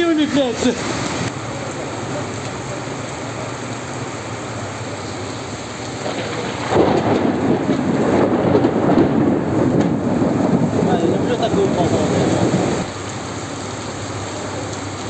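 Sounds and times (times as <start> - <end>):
heavy rain falling: 0.0 - 15.0
thunder rumbling: 4.8 - 14.3.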